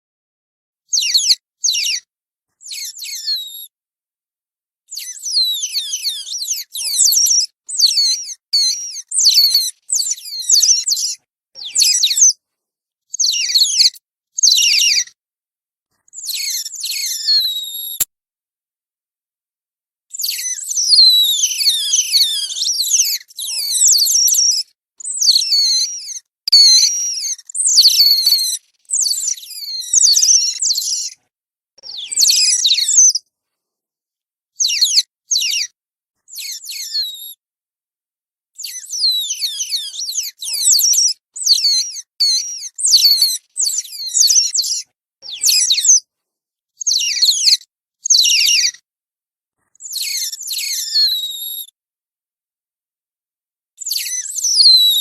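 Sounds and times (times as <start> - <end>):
otters squealing calls: 0.9 - 2.0, 4.9 - 12.4, 13.2 - 15.2, 16.2 - 18.0, 20.2 - 31.2, 31.9 - 33.2, 38.6 - 46.0, 49.9 - 51.6.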